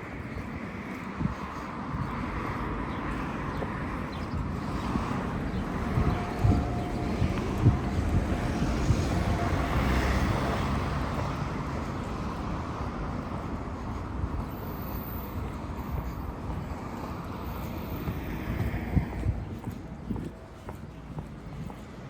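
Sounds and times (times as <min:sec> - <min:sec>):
car tyre and road noise: 0:00.0 - 0:22.0
steady low rumble: 0:00.0 - 0:22.0.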